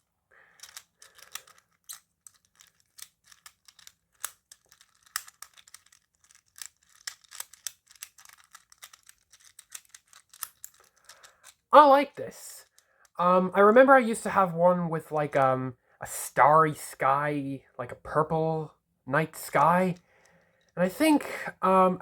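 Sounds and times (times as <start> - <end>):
small plastic clicks and rustles: 0.0 - 11.7, 12.6 - 13.2, 19.5 - 20.8.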